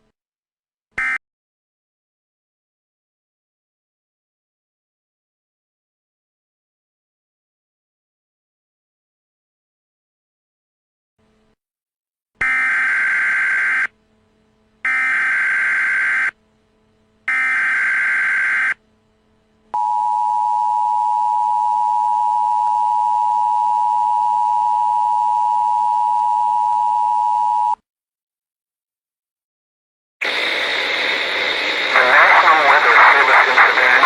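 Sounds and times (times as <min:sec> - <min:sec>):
steady attention tone: 0:12.6 - 0:27.8.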